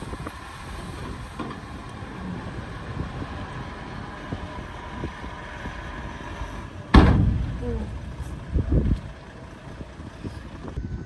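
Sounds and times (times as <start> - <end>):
diesel engine running: 0.0 - 10.8
metal knocks and clanks: 5.9 - 10.2.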